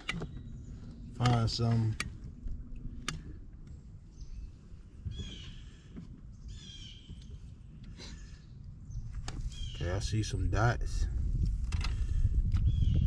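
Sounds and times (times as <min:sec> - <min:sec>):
bird calling: 0:04.0 - 0:10.0
wind on microphone: 0:08.8 - 0:13.0.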